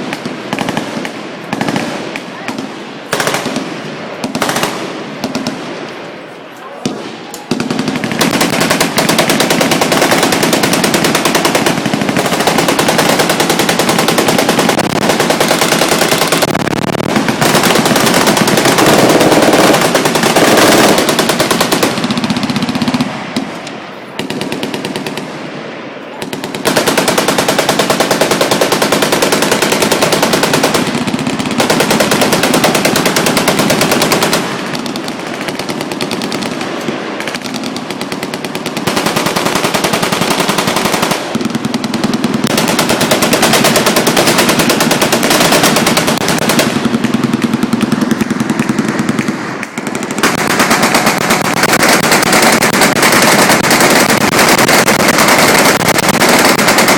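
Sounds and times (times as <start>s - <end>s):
machine guns firing bursts: 0.0s - 5.7s, 7.5s - 23.1s, 24.2s - 25.2s, 26.2s - 56.9s.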